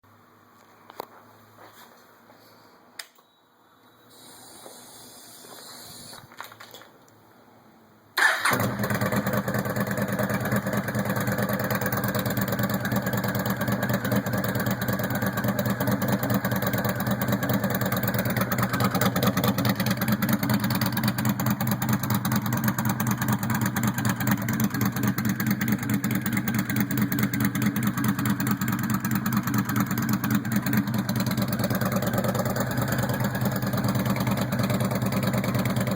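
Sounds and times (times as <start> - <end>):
motorcycle engine idling: 8.2 - 35.9.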